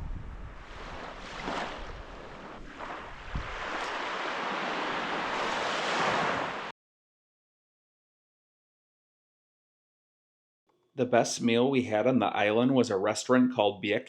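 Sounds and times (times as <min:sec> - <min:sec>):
wind buffeting microphone: 0:00.0 - 0:06.4
waves washing onto beach: 0:00.0 - 0:06.7.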